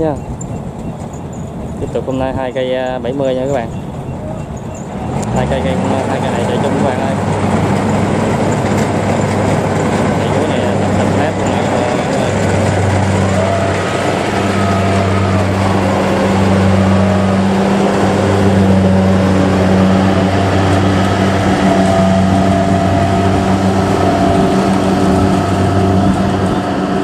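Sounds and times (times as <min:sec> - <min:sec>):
combine harvester engines running: 0:00.0 - 0:27.0.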